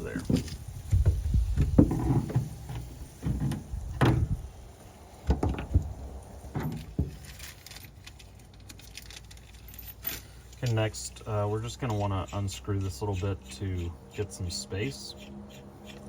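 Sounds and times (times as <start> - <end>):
screwdriver knocks and scrapes: 0.3 - 4.4.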